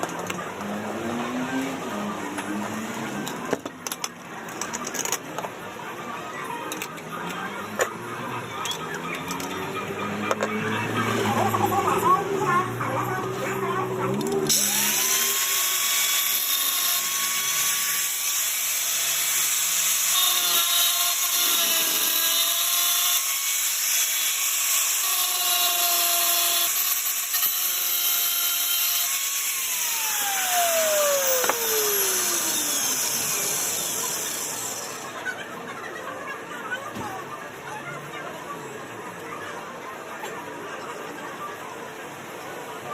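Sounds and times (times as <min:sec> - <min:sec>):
power tool grinding: 0:09.0 - 0:35.2
motor winding down whine: 0:14.1 - 0:35.2.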